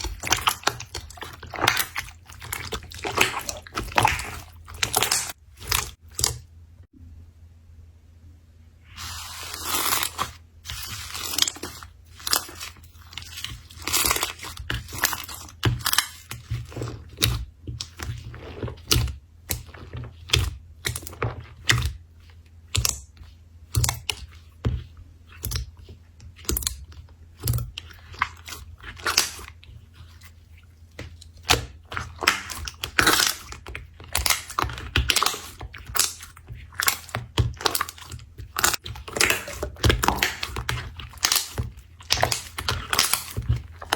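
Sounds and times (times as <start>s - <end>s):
slime squished by hand: 0.0s - 6.5s, 8.9s - 43.9s
faint low hum: 0.0s - 9.4s.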